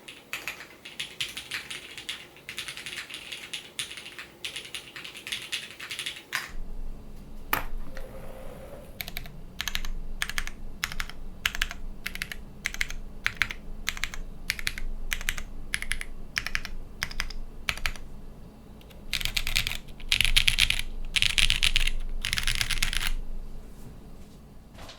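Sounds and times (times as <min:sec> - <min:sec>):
mechanical keyboard typing: 0:00.0 - 0:06.5, 0:09.0 - 0:18.0, 0:18.8 - 0:23.2.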